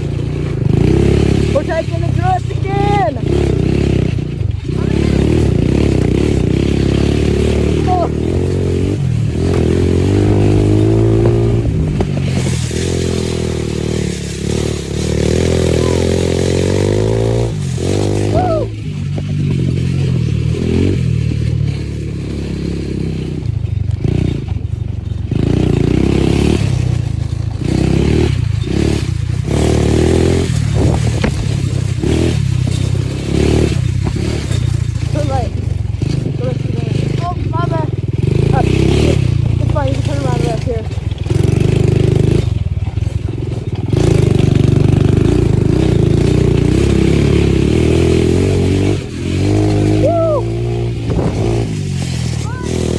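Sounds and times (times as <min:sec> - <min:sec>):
engine running with rising pitch: 0:00.0 - 0:52.9.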